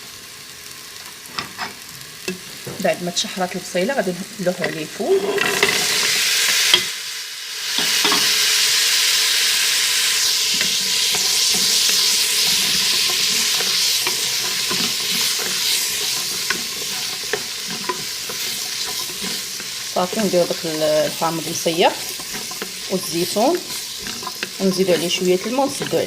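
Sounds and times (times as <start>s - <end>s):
food sizzling in oil: 0.0s - 26.0s
spoon stirring clicks and scrapes: 10.5s - 20.8s, 21.5s - 26.0s.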